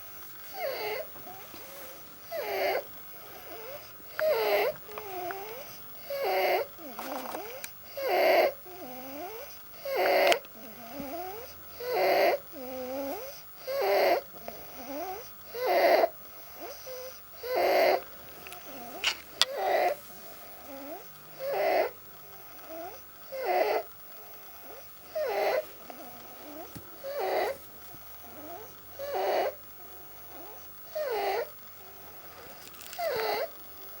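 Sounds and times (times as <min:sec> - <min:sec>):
quiet wavering breath sounds: 0:00.0 - 0:34.0.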